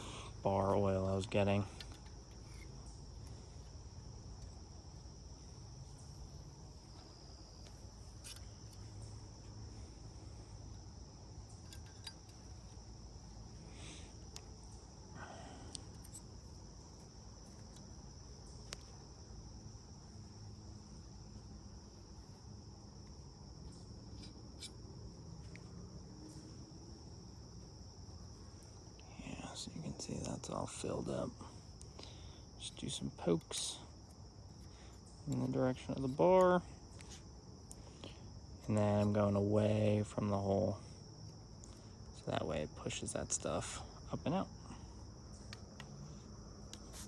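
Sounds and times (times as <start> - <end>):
crickets chirping: 0.0 - 47.0
faint clicks and scrapes: 0.7 - 9.6, 15.7 - 19.0, 21.9 - 24.8, 32.8 - 39.2.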